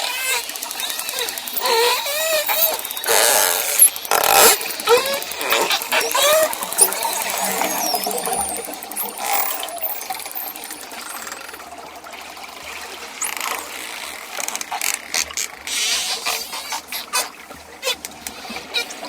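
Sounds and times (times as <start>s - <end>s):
dolphin clicks: 0.0s - 11.7s
dolphin whistles: 0.8s - 11.6s.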